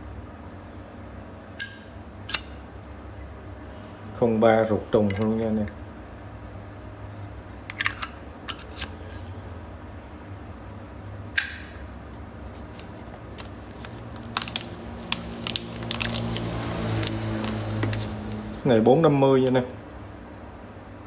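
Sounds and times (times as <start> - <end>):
steady low hum: 0.0 - 21.0
lighter metallic clicks: 11.4 - 11.8.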